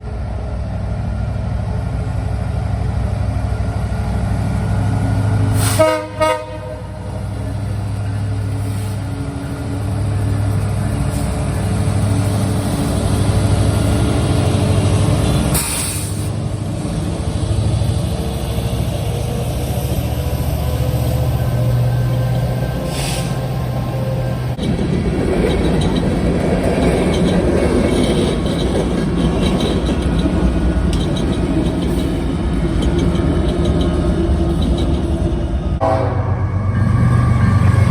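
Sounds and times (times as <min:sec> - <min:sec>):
locomotive engine drone: 0:00.0 - 0:37.9
train cars rolling: 0:00.0 - 0:37.9
train horn toot: 0:05.6 - 0:07.1, 0:35.8 - 0:37.9.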